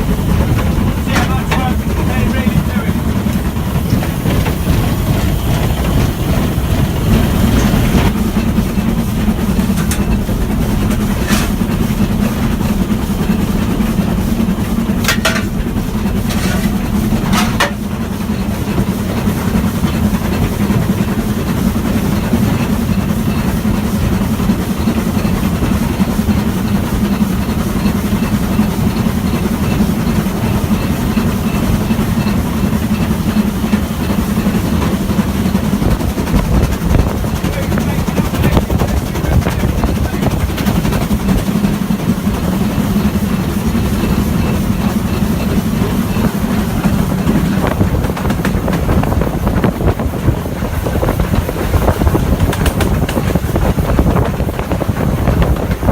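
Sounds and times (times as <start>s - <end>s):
steam locomotive rumble: 0.0s - 55.9s
sharp metal clanks: 15.0s - 17.9s.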